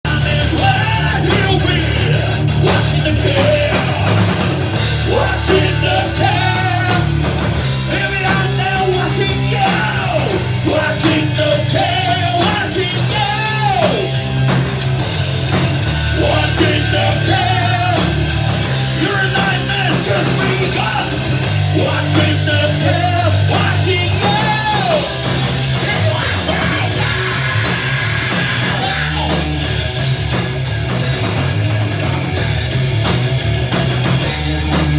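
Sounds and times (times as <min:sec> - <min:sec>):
person singing and yelling: 0:00.0 - 0:04.3, 0:04.9 - 0:07.2, 0:07.8 - 0:14.2, 0:16.1 - 0:18.3, 0:18.9 - 0:29.7
heavy rock band playing: 0:00.0 - 0:34.9.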